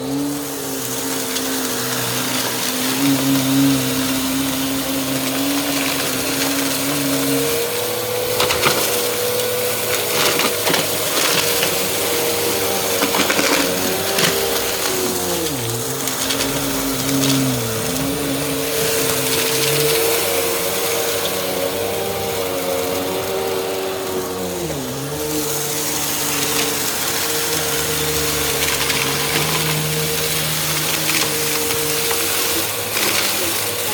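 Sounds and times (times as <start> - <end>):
upright vacuum cleaner running: 0.0 - 33.9
crackles: 0.2 - 22.3.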